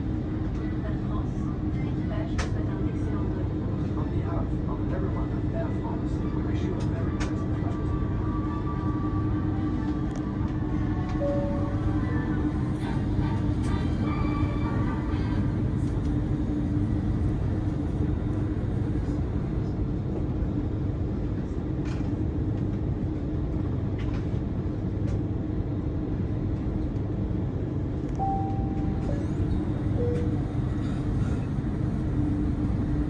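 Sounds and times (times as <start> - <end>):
aircraft cabin rumble: 0.0 - 33.0
short chime tone: 28.2 - 29.0.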